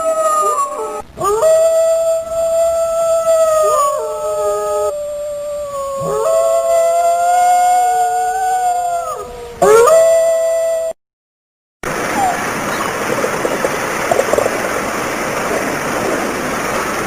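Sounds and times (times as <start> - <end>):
dogs howling: 0.0 - 1.8, 2.7 - 5.0, 5.7 - 10.2, 12.0 - 13.4.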